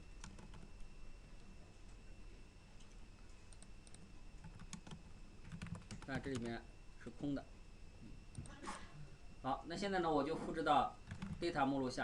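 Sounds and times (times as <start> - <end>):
low electrical hum: 0.0 - 12.0
faint keyboard typing: 0.2 - 2.0, 2.8 - 6.6, 11.0 - 11.6.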